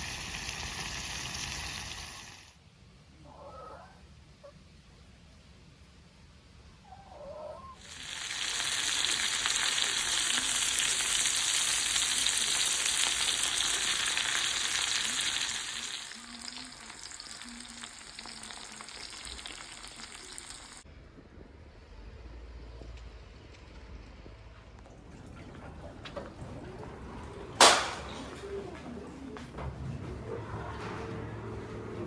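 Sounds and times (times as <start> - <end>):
food sizzling in a pan: 0.0 - 2.5, 7.8 - 20.8.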